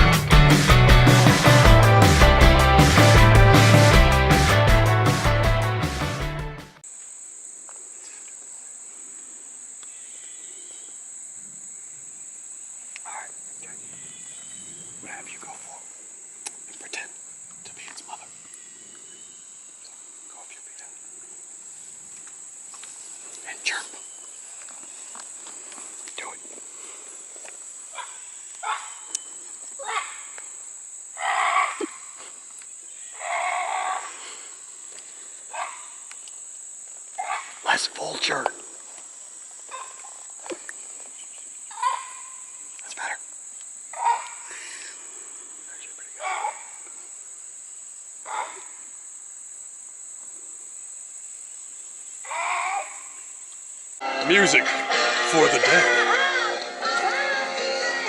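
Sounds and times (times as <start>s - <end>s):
insects trilling: 6.8s - 58.0s
faint small ticks: 9.8s - 10.0s, 16.4s - 19.0s, 36.0s - 37.2s, 42.7s - 44.4s, 53.1s - 53.8s.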